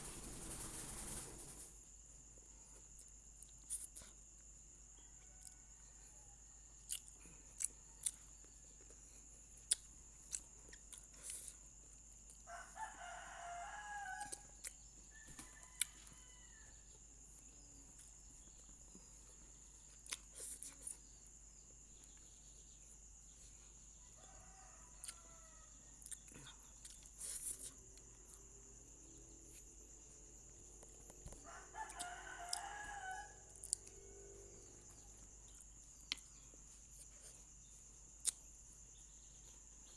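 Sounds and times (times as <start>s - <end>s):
rooster crowing: 5.0s - 6.9s, 12.5s - 16.9s, 24.0s - 26.0s, 27.9s - 35.2s.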